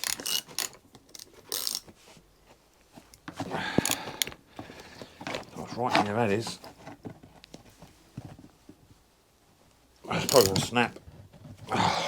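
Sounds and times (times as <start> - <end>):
socket ratchet clicking: 0.0 - 1.9.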